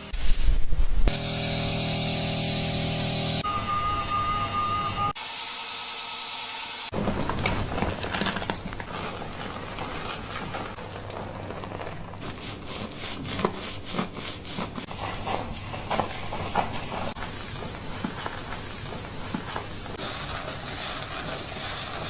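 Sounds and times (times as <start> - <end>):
fingers scratching through hair: 6.9 - 22.0.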